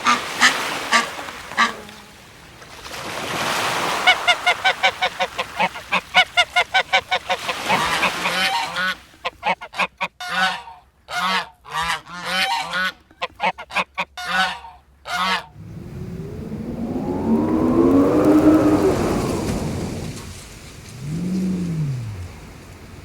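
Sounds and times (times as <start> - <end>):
low rising sound: 15.5 - 22.6.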